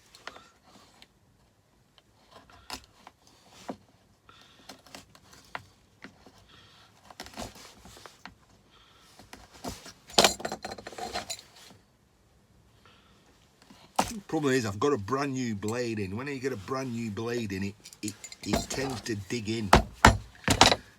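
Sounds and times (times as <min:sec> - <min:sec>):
plastic clatter: 0:19.8 - 0:20.9.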